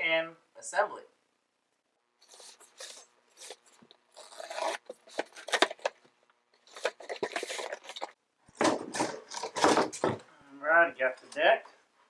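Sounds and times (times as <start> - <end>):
cardboard scraping and rustling: 2.2 - 6.0, 6.6 - 10.0.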